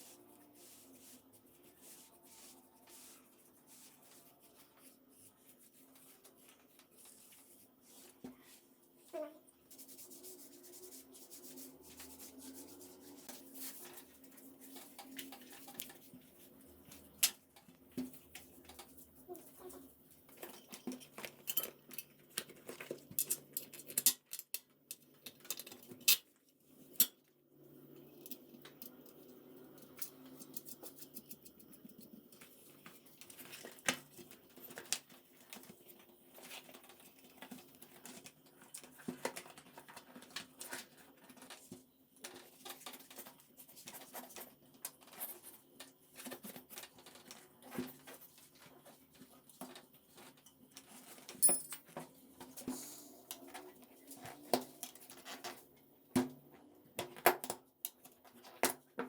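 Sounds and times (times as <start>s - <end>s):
metal hand tools clinking: 51.4s - 51.8s.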